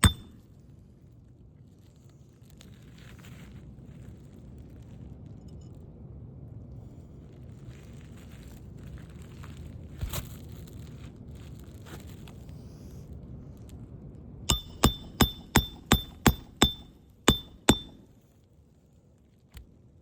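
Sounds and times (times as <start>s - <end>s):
hammer striking metal: 0.0s - 0.4s, 14.5s - 18.1s.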